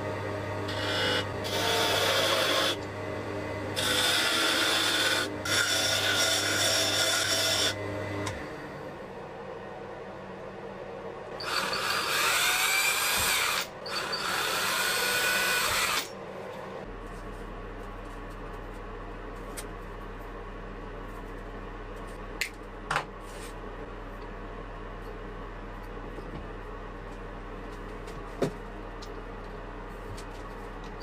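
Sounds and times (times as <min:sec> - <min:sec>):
handheld power tool whining: 0:03.8 - 0:08.4, 0:11.4 - 0:16.1
low steady hum: 0:16.1 - 0:31.0.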